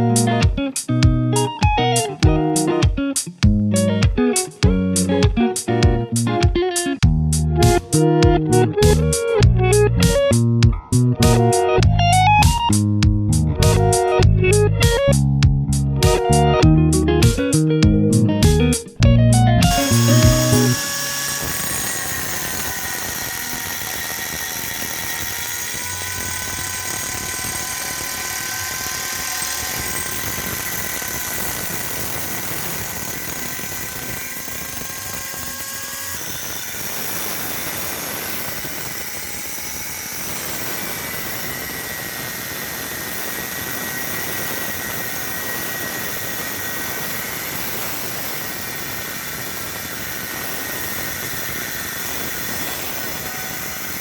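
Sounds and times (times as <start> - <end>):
angle grinder grinding steel: 19.6 - 54.0.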